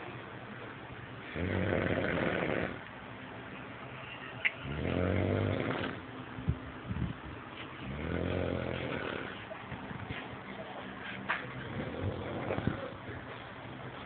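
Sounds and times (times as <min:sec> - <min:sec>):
person snoring: 0:01.3 - 0:02.8, 0:04.6 - 0:06.0, 0:07.8 - 0:09.4, 0:11.6 - 0:13.0.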